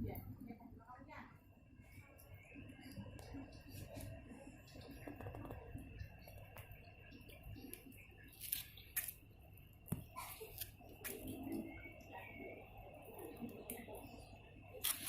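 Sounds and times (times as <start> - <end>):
crackling and clicking in termite nest: 4.0 - 11.2.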